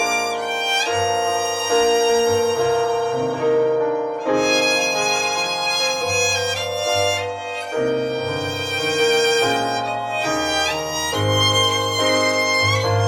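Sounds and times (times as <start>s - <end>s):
low accompaniment: 0.0s - 13.0s
violin melody: 0.0s - 13.0s.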